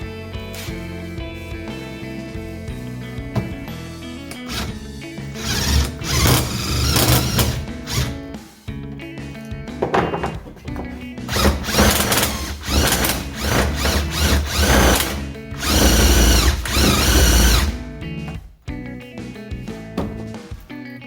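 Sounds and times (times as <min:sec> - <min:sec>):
background music: 0:00.0 - 0:21.0
power drill running: 0:04.5 - 0:04.8, 0:05.4 - 0:08.2, 0:11.3 - 0:18.0.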